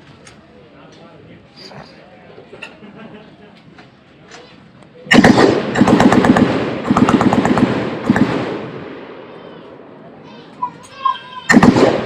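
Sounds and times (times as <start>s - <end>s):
machine gun bursts: 5.1s - 8.4s, 11.5s - 12.0s.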